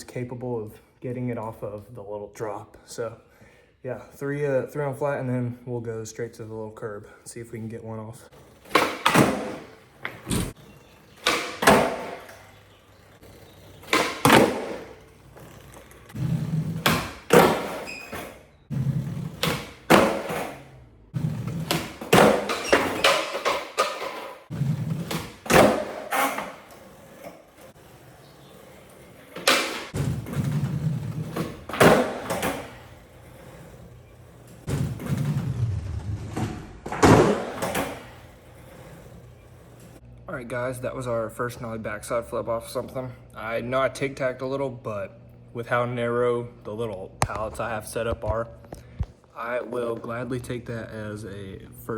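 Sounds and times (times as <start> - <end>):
skateboard wheels rolling: 8.3 - 40.0
skateboard clacking on landings: 8.4 - 16.2, 16.8 - 35.3.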